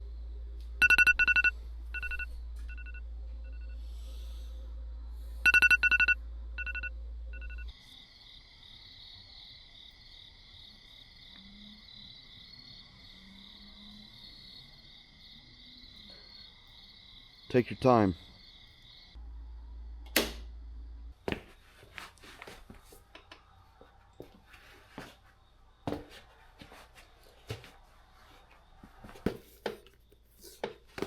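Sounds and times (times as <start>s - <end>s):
steady low hum: 0.0s - 7.7s, 19.1s - 21.8s
crickets chirping: 0.0s - 31.0s
rapid electronic beeping: 0.8s - 3.7s, 5.5s - 7.7s.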